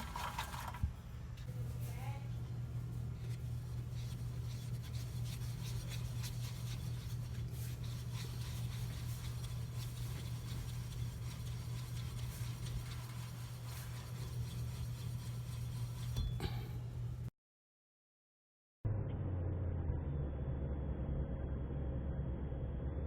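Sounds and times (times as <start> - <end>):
wheel bearing rasping rub: 3.3 - 16.8
low hum: 18.9 - 23.0.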